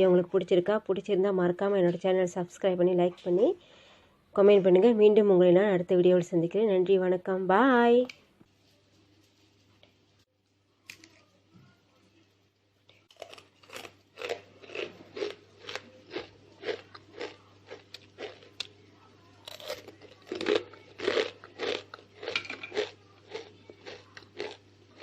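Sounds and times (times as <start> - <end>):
crunchy snack being chewed: 13.1 - 18.8, 19.4 - 25.0.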